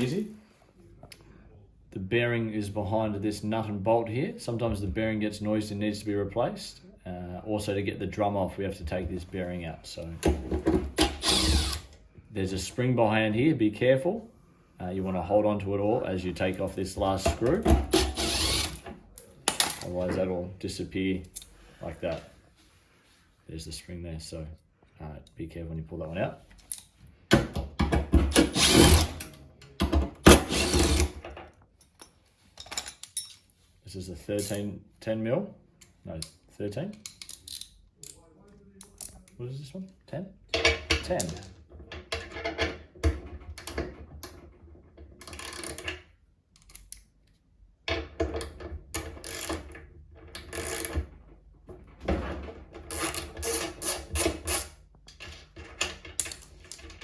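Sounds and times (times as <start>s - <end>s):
power drill running: 11.0s - 11.9s, 17.9s - 18.8s, 28.4s - 29.1s, 30.3s - 31.1s
ratchet wrench clicking: 18.0s - 18.8s, 50.5s - 50.9s.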